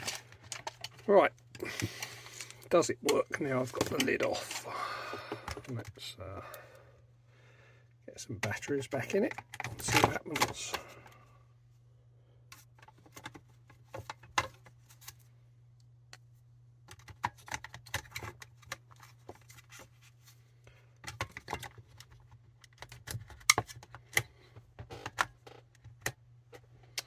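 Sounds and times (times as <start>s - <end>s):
batteries and plastic parts clicking: 0.0s - 6.7s, 8.4s - 11.2s, 16.8s - 19.9s, 21.0s - 27.0s.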